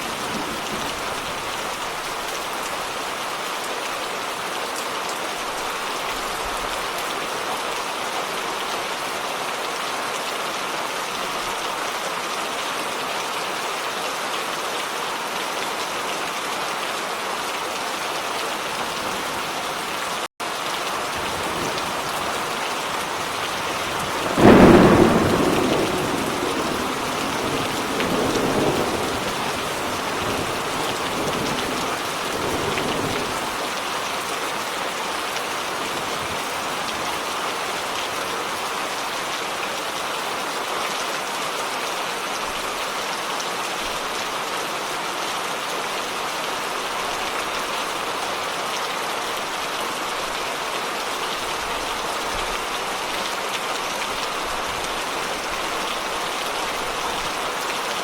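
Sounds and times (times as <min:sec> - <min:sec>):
steady rain falling: 0:00.0 - 0:58.0
thunder clap rumbling: 0:21.2 - 0:33.6.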